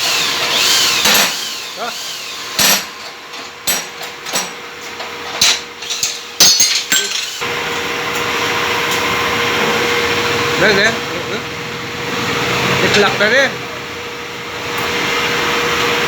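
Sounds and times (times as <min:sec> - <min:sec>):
metal tools clinking: 0:02.6 - 0:07.4.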